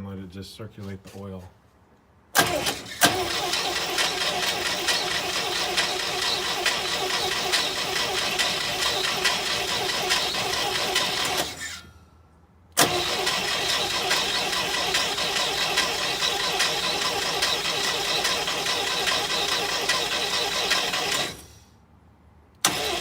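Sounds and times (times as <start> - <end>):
sharp starter click: 2.4 - 11.8, 12.8 - 21.5, 22.6 - 23.0
engine cranking without firing: 2.4 - 11.9, 12.8 - 21.6, 22.6 - 23.0.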